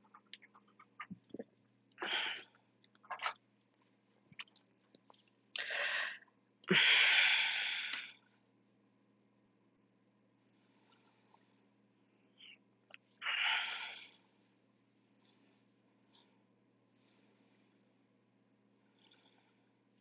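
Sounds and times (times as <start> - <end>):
wet mouth clicks: 4.4 - 5.7
person breathing out hard: 5.6 - 8.2.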